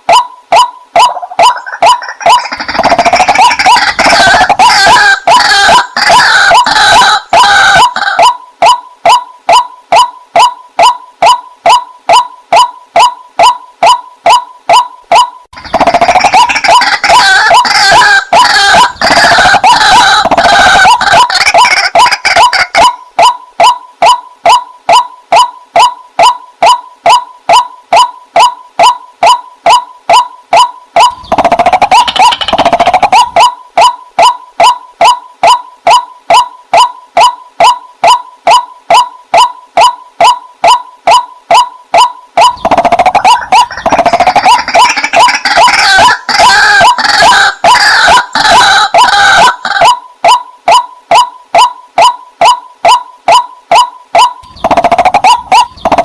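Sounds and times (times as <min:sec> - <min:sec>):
harsh bird calling: 0:30.6 - 0:34.3, 0:42.4 - 0:50.4, 0:53.3 - 0:56.0.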